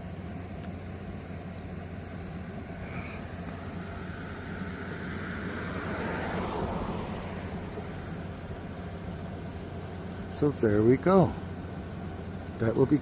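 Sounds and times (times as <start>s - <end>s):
vehicle engine running: 0.0s - 13.0s
passing vehicle rush: 2.6s - 11.5s.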